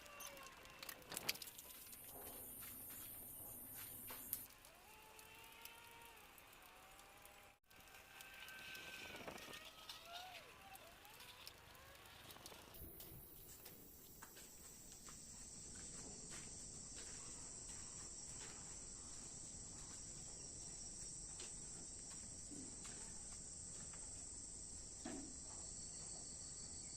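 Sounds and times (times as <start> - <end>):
insects chirring: 0.0 - 4.5, 10.2 - 26.9.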